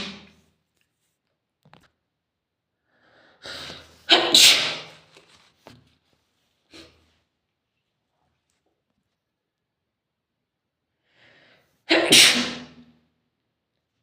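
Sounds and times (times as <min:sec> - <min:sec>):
person sneezing: 0:00.0 - 0:00.4, 0:03.5 - 0:05.0, 0:11.9 - 0:12.9.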